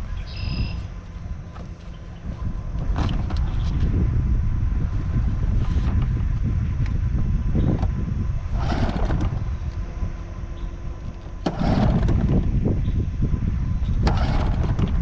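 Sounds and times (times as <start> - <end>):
steady low rumble: 0.0 - 15.0
outboard motor cranking: 0.3 - 3.8, 8.5 - 9.8, 10.5 - 13.0, 13.8 - 15.0.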